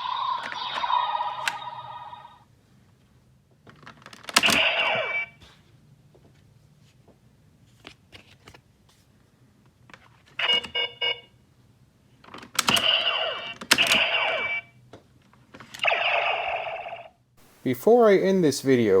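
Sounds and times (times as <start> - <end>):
toy electronic beeps and tones: 0.0 - 2.3, 4.4 - 5.4, 12.7 - 14.7.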